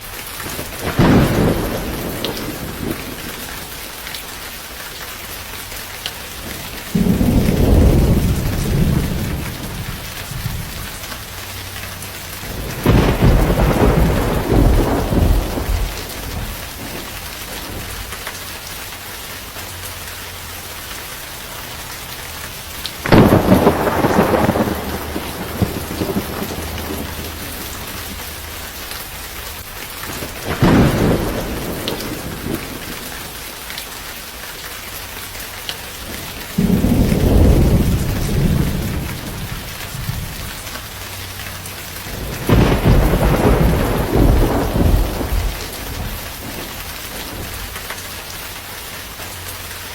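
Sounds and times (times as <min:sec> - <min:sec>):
steady rain: 0:00.0 - 0:49.9
rolling thunder: 0:00.4 - 0:03.7, 0:06.4 - 0:18.2, 0:22.9 - 0:28.9, 0:30.1 - 0:33.4, 0:36.1 - 0:40.9, 0:41.9 - 0:47.9.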